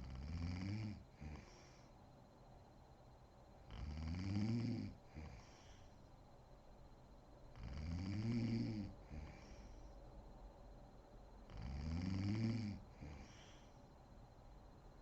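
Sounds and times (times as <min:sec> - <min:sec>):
woman snoring: 0:00.0 - 0:01.6, 0:03.7 - 0:05.6, 0:07.6 - 0:09.6, 0:11.5 - 0:13.6
short breath: 0:05.3 - 0:06.0, 0:13.2 - 0:13.8.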